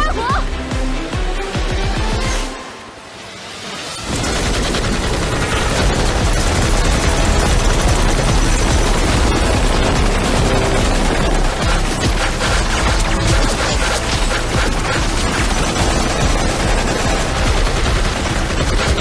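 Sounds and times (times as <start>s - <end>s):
music: 0.0s - 19.0s
rapid gunfire: 4.0s - 19.0s.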